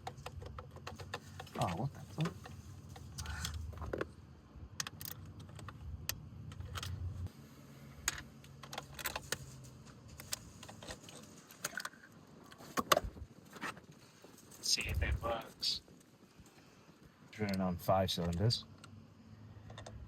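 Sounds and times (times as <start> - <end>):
low steady hum: 14.5 - 20.0.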